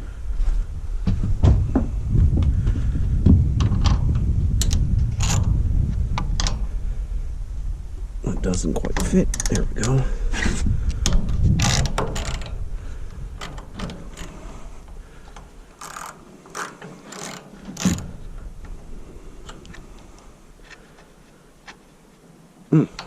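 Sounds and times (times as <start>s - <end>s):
ratchet wrench clicking: 15.8s - 18.0s.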